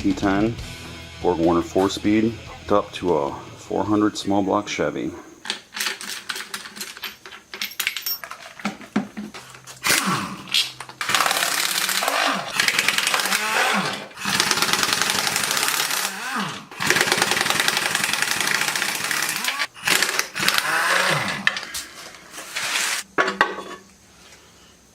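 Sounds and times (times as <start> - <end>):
metal tools clinking: 5.4 - 9.8
pneumatic impact wrench hammering: 9.1 - 21.8.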